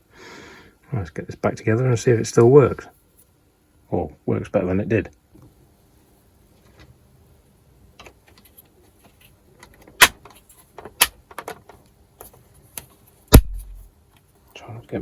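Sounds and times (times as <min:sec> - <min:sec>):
plastic parts clicking: 0:09.6 - 0:11.8
heavy thump: 0:13.4 - 0:13.9.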